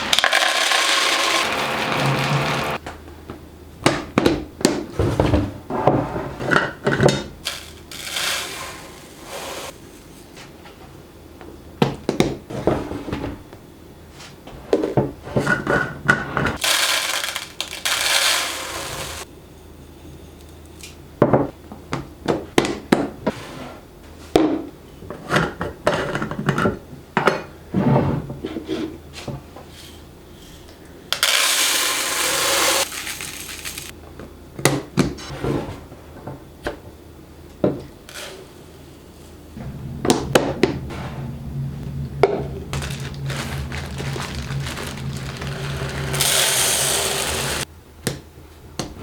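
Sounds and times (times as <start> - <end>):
containers clicking and knocking: 0.0 - 2.8
steady low hum: 37.0 - 48.0.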